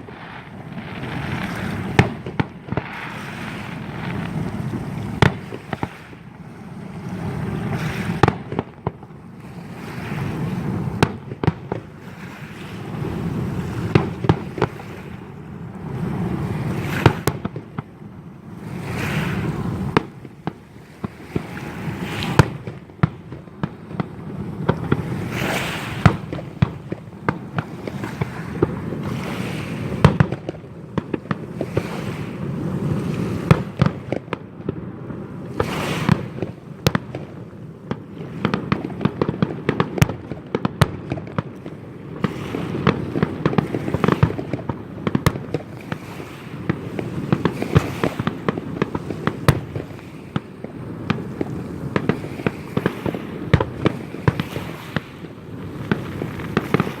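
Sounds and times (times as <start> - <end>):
fireworks hissing: 0.0 - 6.4, 18.8 - 23.0
fireworks shell bursts rumbling: 0.0 - 9.0
fireworks cracks and bangs: 0.0 - 57.0.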